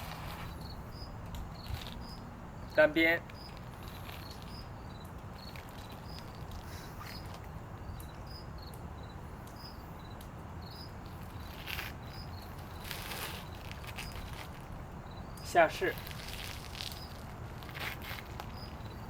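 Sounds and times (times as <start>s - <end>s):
brief rustle: 12.8s - 14.6s.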